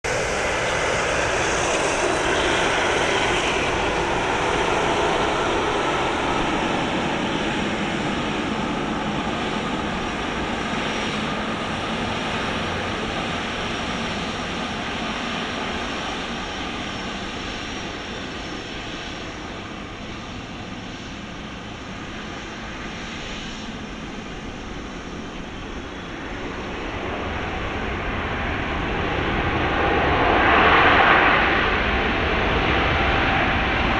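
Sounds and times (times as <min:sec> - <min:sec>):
jet airliner engines humming: 0:00.0 - 0:33.9.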